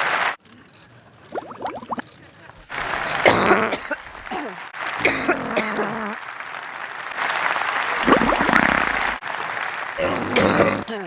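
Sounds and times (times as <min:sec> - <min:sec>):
audience applauding: 0:00.0 - 0:00.4, 0:02.6 - 0:11.0
person coughing: 0:03.2 - 0:05.9.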